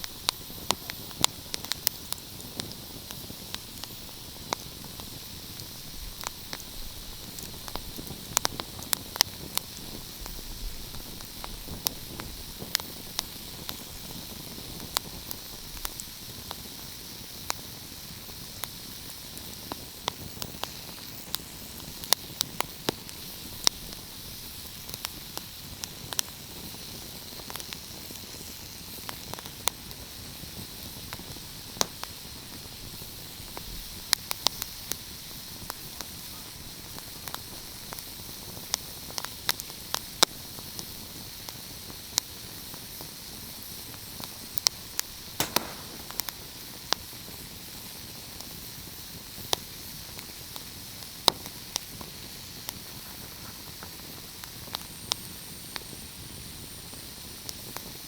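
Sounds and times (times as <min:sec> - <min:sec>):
wood fire crackling: 0:41.4 - 0:47.2.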